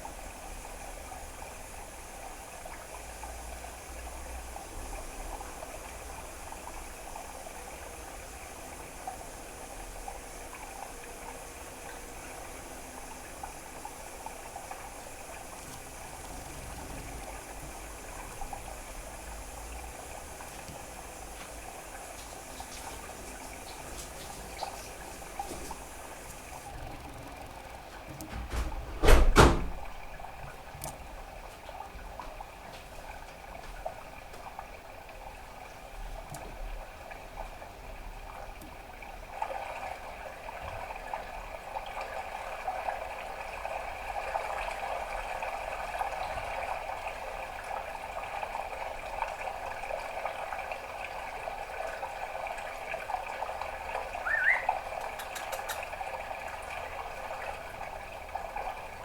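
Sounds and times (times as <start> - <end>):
short rising bird chirp: 54.2 - 55.8
budgerigar chattering: 54.2 - 55.9.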